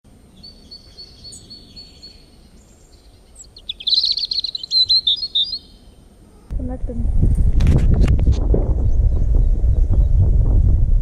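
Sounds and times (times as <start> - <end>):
songbirds singing: 0.1 - 6.6.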